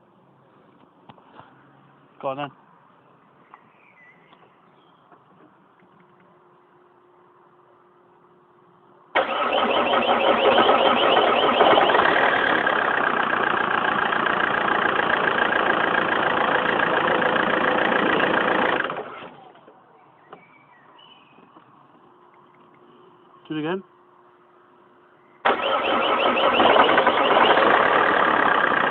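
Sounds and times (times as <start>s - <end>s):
diesel engine starting: 9.1s - 19.9s, 25.4s - 28.9s.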